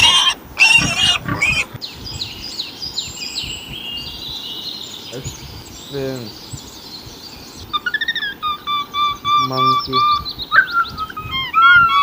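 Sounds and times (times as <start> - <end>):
pig squealing: 0.0 - 1.8, 7.8 - 12.0
birds chirping high notes: 0.0 - 12.0.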